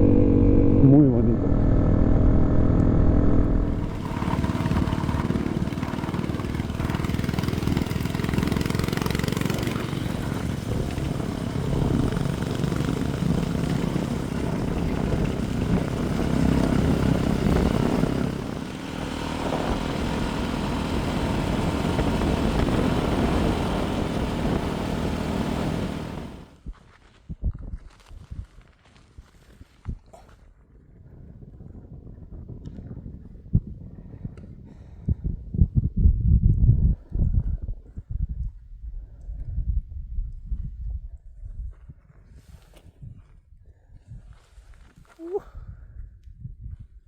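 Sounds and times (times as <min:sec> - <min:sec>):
motorcycle engine running: 0:00.0 - 0:26.6
wind and road noise: 0:00.0 - 0:47.0.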